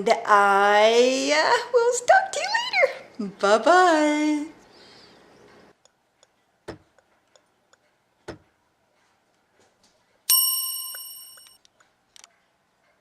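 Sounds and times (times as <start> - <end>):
bell-like ding: 10.3 - 11.6.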